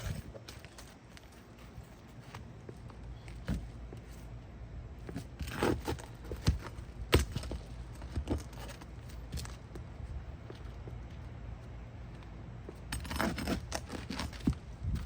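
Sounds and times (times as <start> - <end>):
metal scraping on shingles: 5.2 - 9.6, 12.8 - 14.7.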